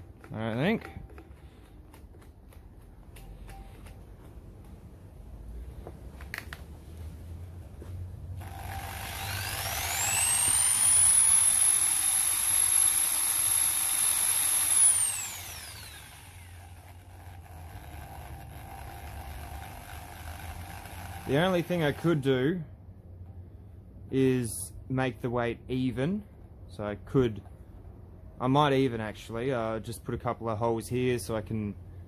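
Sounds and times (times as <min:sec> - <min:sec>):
electric drill whining: 0:08.4 - 0:22.3.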